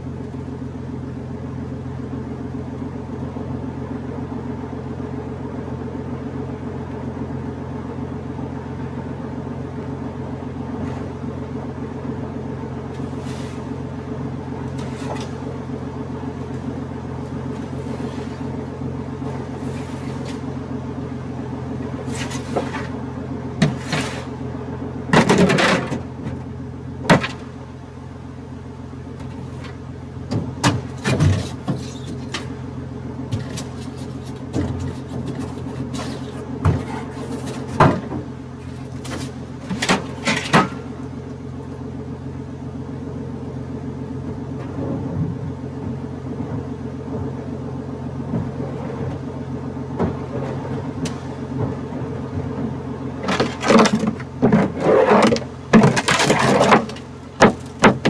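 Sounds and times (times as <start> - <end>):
pickup engine idling: 0.0 - 58.0
scrapes and knocks: 14.7 - 15.6, 16.4 - 20.6, 21.9 - 24.5, 25.1 - 27.6, 29.2 - 32.6, 33.2 - 41.1, 48.2 - 58.0.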